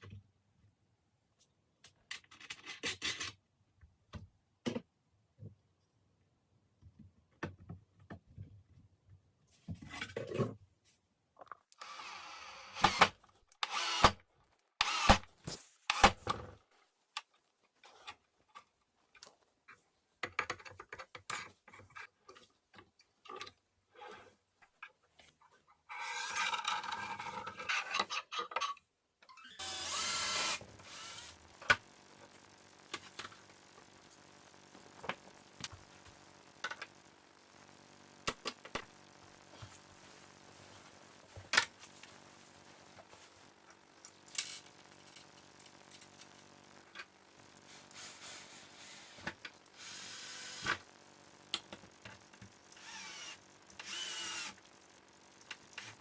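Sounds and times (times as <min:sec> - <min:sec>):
power tool bursts: 0:11.8 - 0:14.2, 0:14.8 - 0:15.3, 0:29.5 - 0:40.0, 0:43.0 - 0:56.0
faint steady hum: 0:29.6 - 0:56.0.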